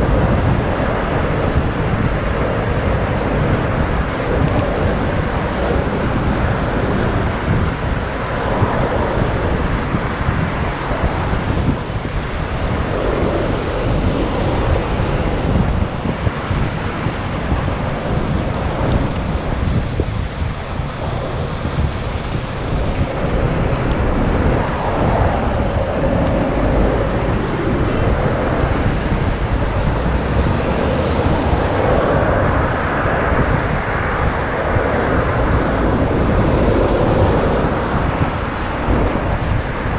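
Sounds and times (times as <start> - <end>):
street traffic noise: 0.0 - 39.9
wind buffeting microphone: 0.0 - 39.9.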